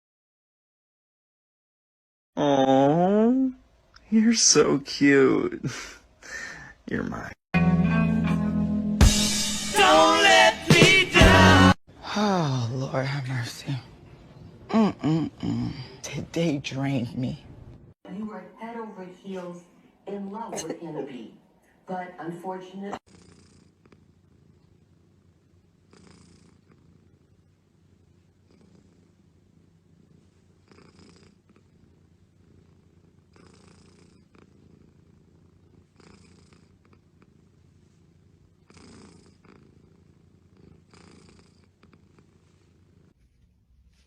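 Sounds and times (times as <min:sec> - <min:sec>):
cat purring: 0:23.0 - 0:44.0.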